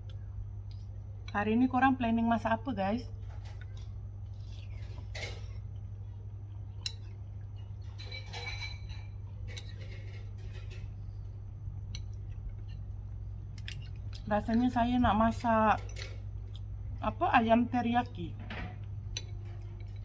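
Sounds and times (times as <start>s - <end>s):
steady low hum: 0.0s - 20.0s
cutlery clinking against bowl: 6.8s - 11.0s, 13.6s - 14.7s, 15.8s - 16.7s, 18.4s - 20.0s.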